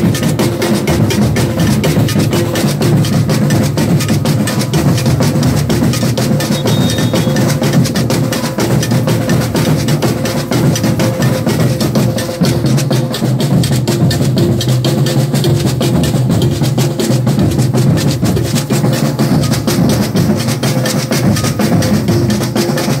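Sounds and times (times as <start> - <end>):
sharp clicking drum strokes: 0.0 - 23.0.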